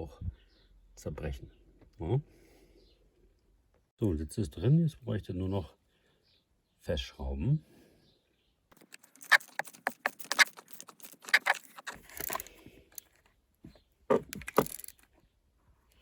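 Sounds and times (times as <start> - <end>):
metal tools clinking: 8.8 - 13.2, 14.1 - 15.1.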